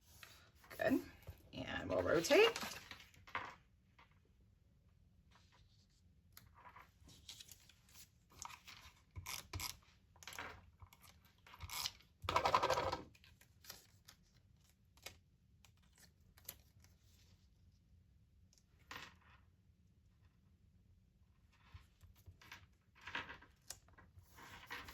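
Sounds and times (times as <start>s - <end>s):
paper rustling and scraping: 24.2s - 24.9s.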